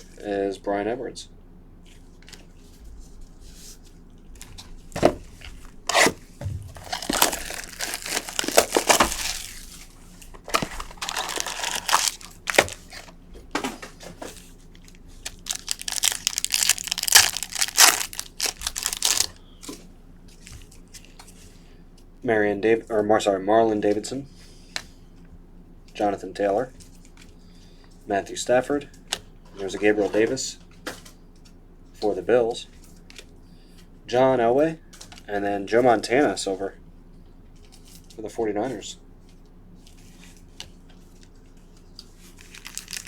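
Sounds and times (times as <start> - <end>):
plastic wrappers crinkling: 5.5 - 13.2, 14.7 - 19.4, 42.0 - 43.0.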